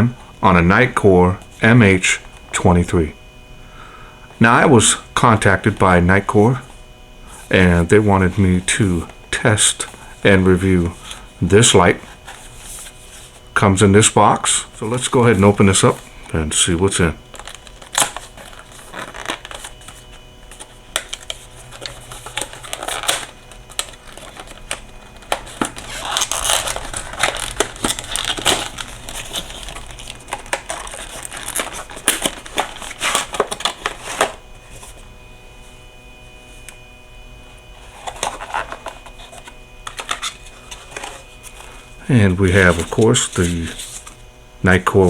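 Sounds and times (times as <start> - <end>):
packaging crinkling and rustling: 11.9 - 35.1, 37.6 - 41.9, 42.5 - 44.3.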